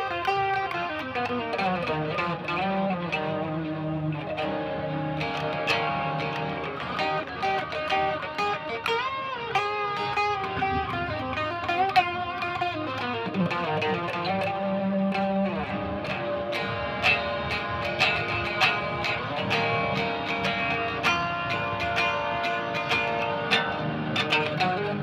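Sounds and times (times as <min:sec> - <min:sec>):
electric guitar melody: 0:00.0 - 0:25.0.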